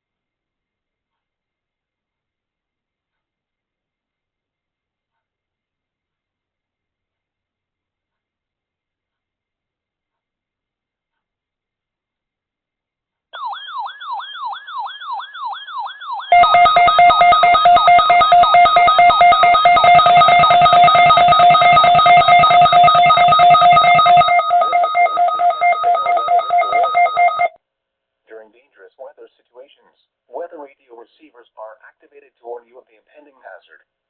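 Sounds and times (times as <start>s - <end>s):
loud pulsing alarm tone: 13.4s - 27.5s
warbling alert tone: 13.4s - 27.5s.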